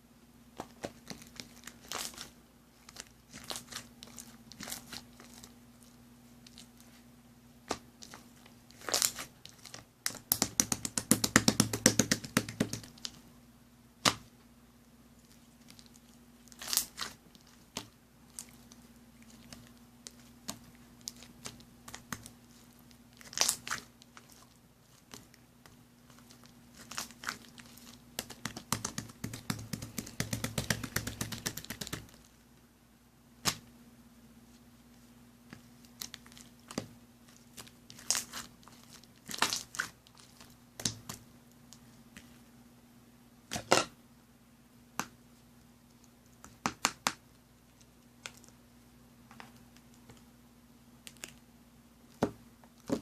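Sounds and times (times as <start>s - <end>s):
faint steady hum: 0.0s - 53.0s
dense crinkling: 0.6s - 7.1s, 7.7s - 10.2s, 15.2s - 32.4s, 34.4s - 42.4s.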